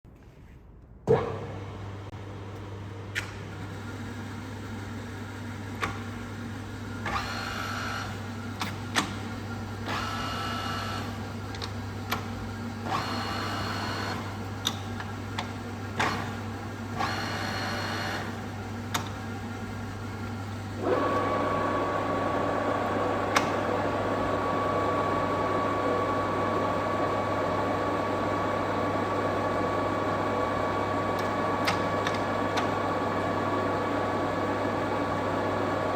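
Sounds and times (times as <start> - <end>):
lathe motor hum: 1.1 - 35.9
sharp clicks from controls: 2.5 - 3.8, 5.6 - 6.3, 7.0 - 20.0, 23.2 - 24.1, 31.1 - 32.8
lathe spindle high whine: 7.1 - 8.2, 9.9 - 11.2, 12.9 - 14.4, 17.0 - 18.4.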